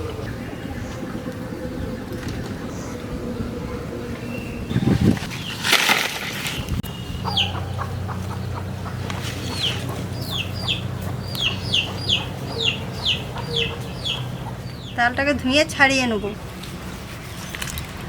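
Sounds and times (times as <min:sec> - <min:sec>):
steady low hum: 0:00.0 - 0:05.6, 0:06.2 - 0:18.0
chickens peeping: 0:06.5 - 0:15.0.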